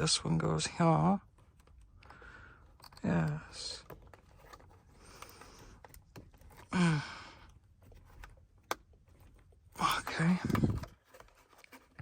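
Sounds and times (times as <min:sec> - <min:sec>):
man sighing: 0:06.6 - 0:07.5
man exhaling: 0:06.7 - 0:07.5.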